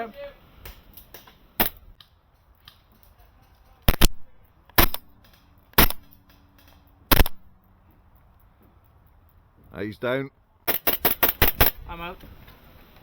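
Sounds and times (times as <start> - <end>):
airsoft gun shots: 1.6 - 1.9, 3.9 - 6.3, 7.1 - 7.5, 10.7 - 11.8.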